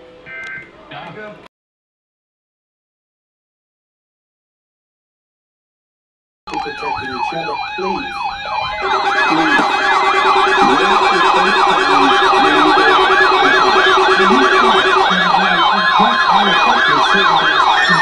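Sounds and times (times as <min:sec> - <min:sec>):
electronic siren yelping: 0:06.5 - 0:18.0
steady low tone: 0:08.8 - 0:18.0.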